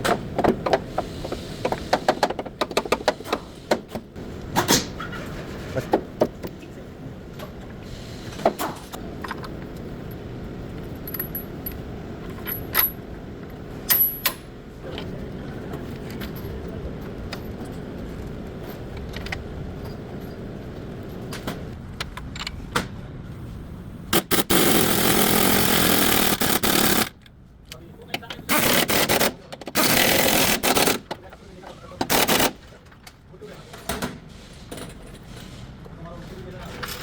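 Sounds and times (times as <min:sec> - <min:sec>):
steady low background hum: 0:00.0 - 0:37.0
metal tools clinking on car parts: 0:36.7 - 0:37.0.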